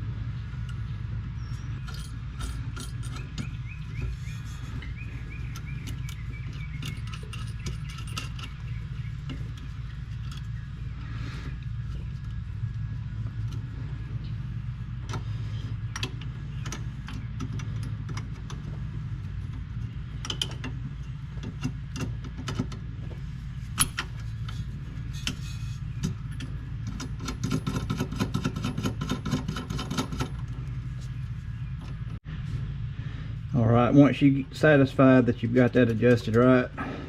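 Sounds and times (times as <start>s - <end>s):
steady low hum: 0.0s - 37.0s
metal tools clinking: 1.6s - 10.7s.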